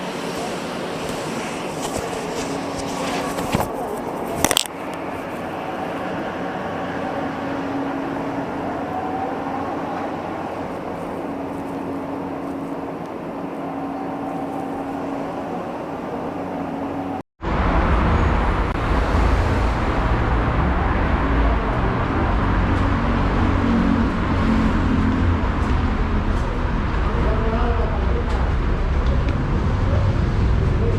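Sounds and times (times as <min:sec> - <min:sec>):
metro train rumble: 0:00.0 - 0:30.9
road traffic rumble: 0:00.0 - 0:30.9.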